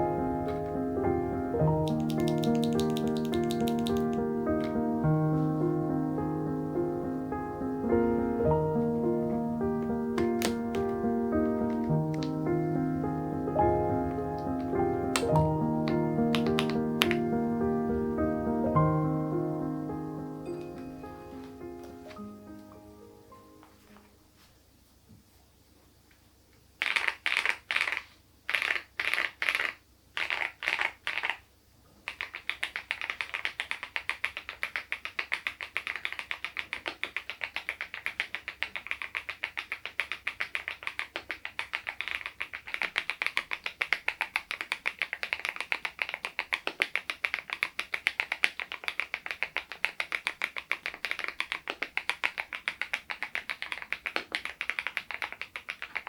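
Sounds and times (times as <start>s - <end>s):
mechanical keyboard typing: 1.6s - 4.8s, 9.8s - 12.5s, 13.5s - 17.4s, 32.1s - 56.0s.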